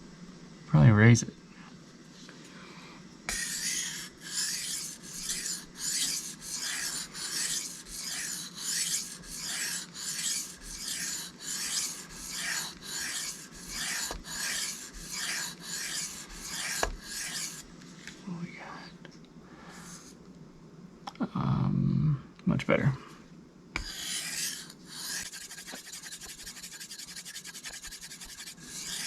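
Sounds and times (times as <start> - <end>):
knife scraping on whetstone: 3.3 - 17.7, 23.8 - 29.0.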